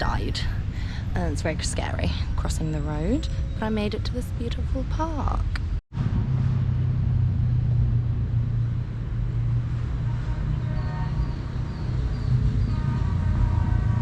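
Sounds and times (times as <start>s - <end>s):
vehicles passing: 0.0s - 14.0s
low engine hum: 3.0s - 14.0s.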